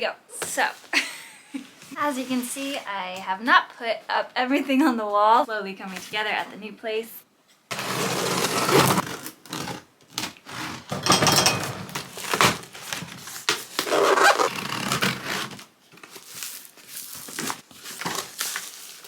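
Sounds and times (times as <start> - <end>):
cardboard scraping and rustling: 7.7 - 9.8.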